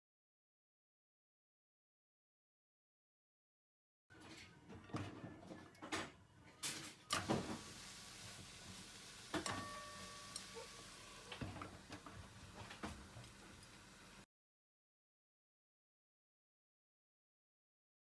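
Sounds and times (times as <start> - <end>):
thin steady tone: 9.3 - 11.7.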